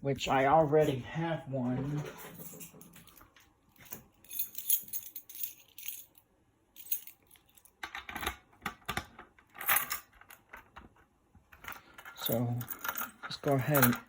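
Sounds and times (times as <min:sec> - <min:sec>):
small hard parts clicking and rattling: 0:11.5 - 0:14.0.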